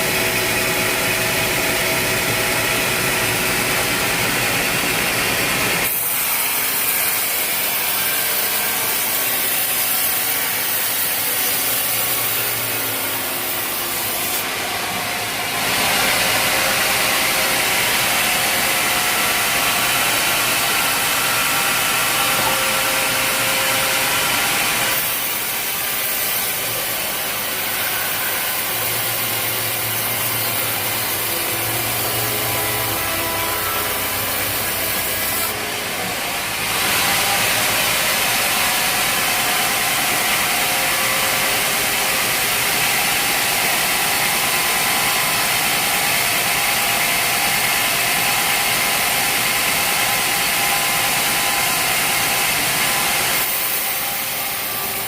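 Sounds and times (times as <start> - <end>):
saw cutting through log: 0.0 - 55.0.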